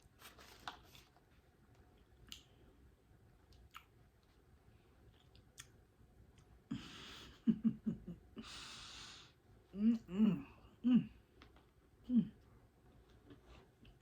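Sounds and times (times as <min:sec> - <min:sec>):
person breathing: 0:06.7 - 0:07.5, 0:08.4 - 0:11.0.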